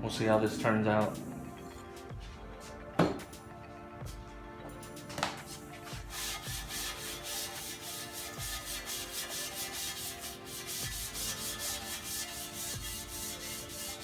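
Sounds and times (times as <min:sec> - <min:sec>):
abrasive pad scuffing metal: 0:04.1 - 0:14.0.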